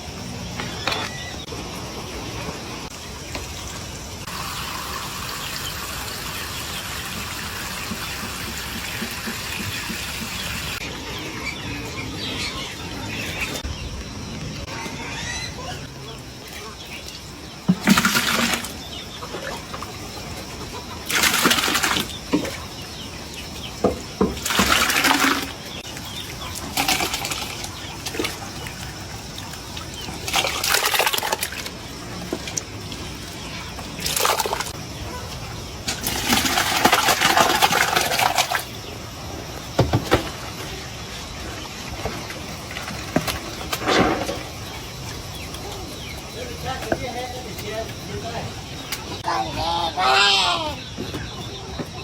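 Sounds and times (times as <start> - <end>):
water splashing: 16.4 - 34.8, 35.8 - 38.8.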